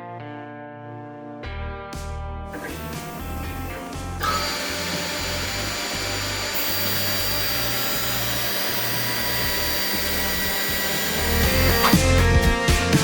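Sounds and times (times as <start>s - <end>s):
router spindle milling wood: 2.5s - 12.6s.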